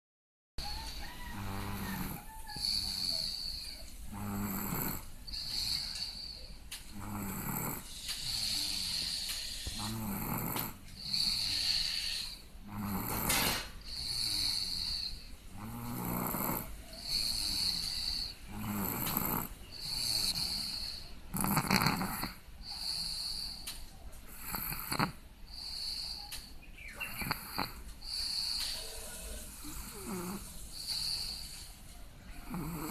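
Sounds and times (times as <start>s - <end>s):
high whistling breath: 0.6s - 3.9s, 5.2s - 6.6s, 7.8s - 10.0s, 11.0s - 12.5s, 25.5s - 27.2s, 28.0s - 32.5s
person snoring: 0.7s - 23.7s, 24.3s - 26.4s, 27.0s - 31.7s, 32.3s - 32.9s.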